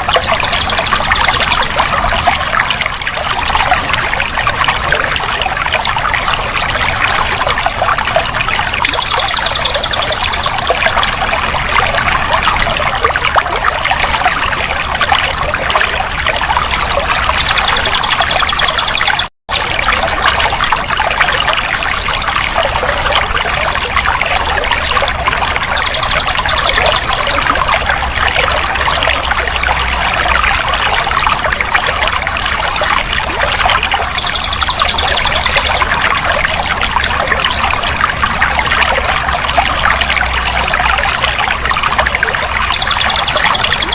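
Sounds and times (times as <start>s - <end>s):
water trickling and splashing: 0.0s - 43.9s
short high bird trill: 8.8s - 10.6s, 34.1s - 36.0s, 42.7s - 43.9s.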